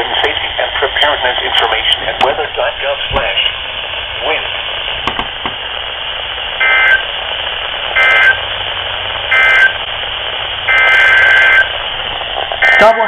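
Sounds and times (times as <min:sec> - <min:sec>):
radio receiver hiss: 0:00.0 - 0:13.0
warbling two-tone data bursts: 0:06.6 - 0:07.1, 0:07.9 - 0:08.5, 0:09.3 - 0:09.8, 0:10.7 - 0:11.8, 0:12.6 - 0:13.0.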